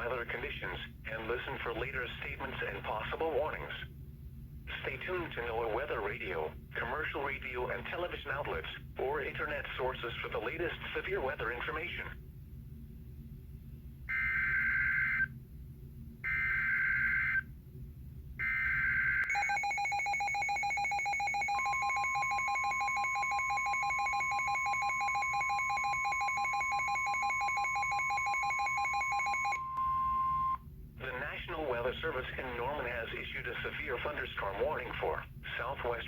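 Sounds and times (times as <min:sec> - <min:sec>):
long steady warning tone: 0:14.0 - 0:15.4, 0:16.0 - 0:17.6, 0:18.4 - 0:34.9
pulsing electronic alarm: 0:14.1 - 0:15.3, 0:16.2 - 0:17.5, 0:18.4 - 0:30.6.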